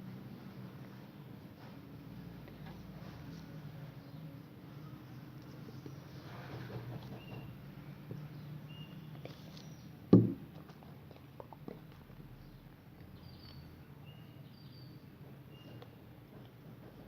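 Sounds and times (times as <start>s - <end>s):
sharp thump: 10.1s - 10.5s.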